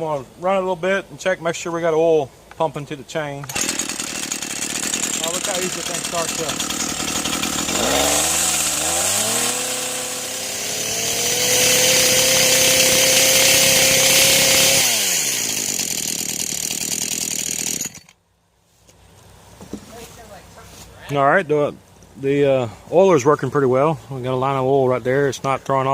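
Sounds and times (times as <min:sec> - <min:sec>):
chainsaw revving and idling: 0:03.5 - 0:18.2.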